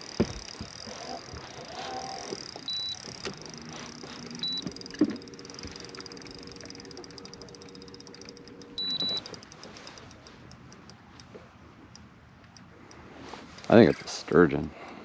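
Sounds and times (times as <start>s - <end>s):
fishing reel drag clicking: 0.0s - 15.0s
steady low hum: 0.0s - 15.0s
short high beep: 2.7s - 3.0s, 8.8s - 9.3s.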